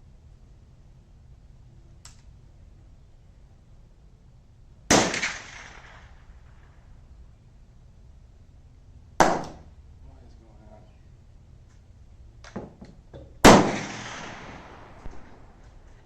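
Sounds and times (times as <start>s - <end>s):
sharp primer pop: 9.2s - 9.7s.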